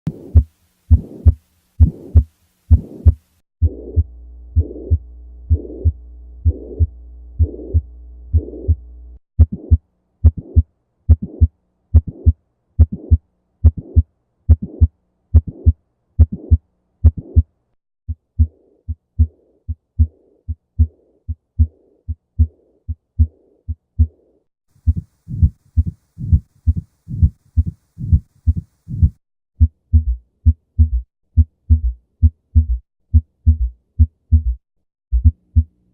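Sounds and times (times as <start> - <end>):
heartbeat with murmur: 0.1 - 8.8, 9.4 - 17.5, 18.1 - 24.2, 24.8 - 35.7
steady low hum: 0.1 - 14.0, 18.1 - 29.2.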